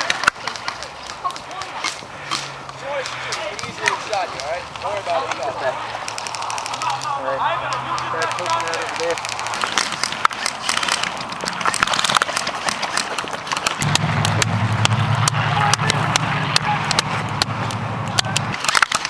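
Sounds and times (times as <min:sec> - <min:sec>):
running footsteps: 0:00.0 - 0:19.0
airsoft gunfire clicks: 0:06.0 - 0:07.1, 0:07.7 - 0:19.0
low steady hum: 0:13.8 - 0:18.6.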